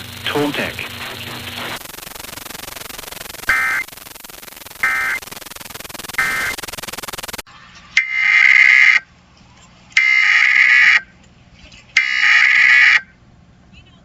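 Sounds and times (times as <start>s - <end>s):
radio receiver hiss: 0.0s - 7.4s
digital data tone bursts: 0.2s - 7.4s.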